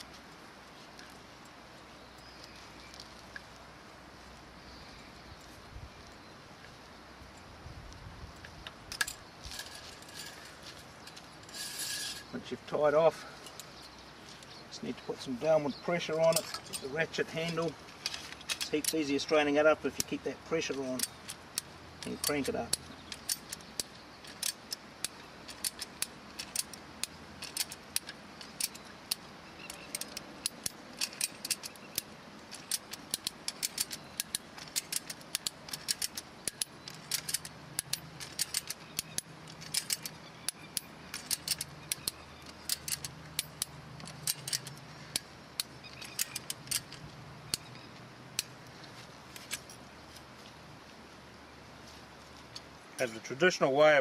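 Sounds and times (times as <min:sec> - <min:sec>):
ratchet clicks: 0:16.2 - 0:47.8.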